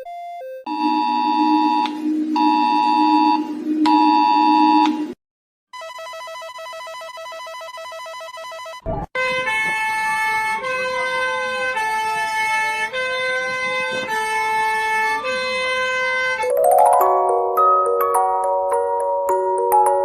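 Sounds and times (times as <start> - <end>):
held electronic chords: 0.0 - 5.2, 9.2 - 20.0
synthesized siren: 0.0 - 5.2
warbling electronic beep: 0.7 - 5.2.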